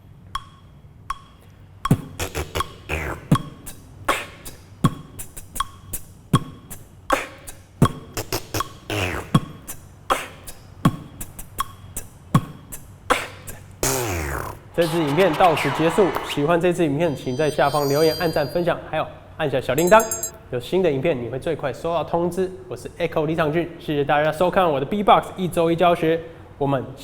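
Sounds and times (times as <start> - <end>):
beatboxed rhythm: 0.4 - 16.6.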